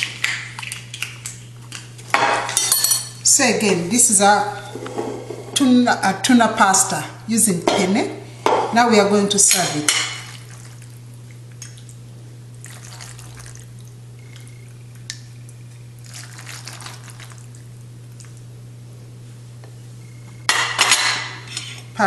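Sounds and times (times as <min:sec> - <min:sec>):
steady low hum: 0:00.0 - 0:22.0
dishes and utensils clattering: 0:02.1 - 0:03.2, 0:20.5 - 0:21.9.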